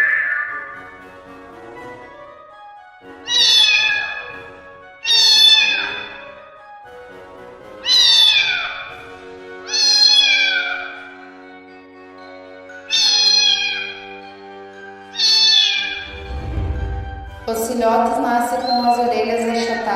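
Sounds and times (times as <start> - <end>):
background music: 0.0 - 19.9
cat meowing: 3.2 - 4.4, 5.0 - 6.3, 7.8 - 8.9, 9.6 - 11.1, 12.8 - 14.2, 15.1 - 16.1.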